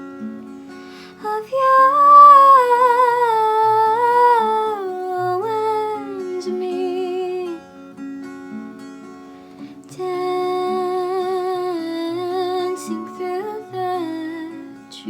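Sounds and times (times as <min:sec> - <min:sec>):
plucked acoustic guitar: 0:00.0 - 0:15.0
woman singing with vibrato: 0:01.1 - 0:07.6, 0:09.9 - 0:15.0.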